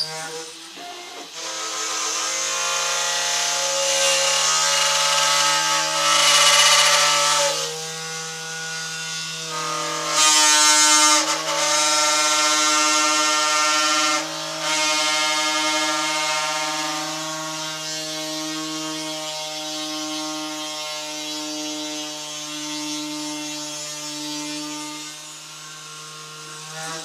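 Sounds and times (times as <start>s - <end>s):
drill motor whine: 0.0s - 17.8s.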